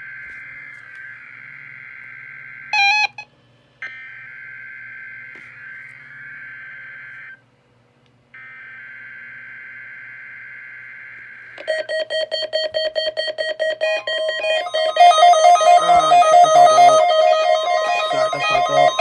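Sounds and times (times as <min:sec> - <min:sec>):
electronic alarm beeping rapidly: 0:11.7 - 0:19.0
two-tone digital data bursts: 0:12.5 - 0:19.0.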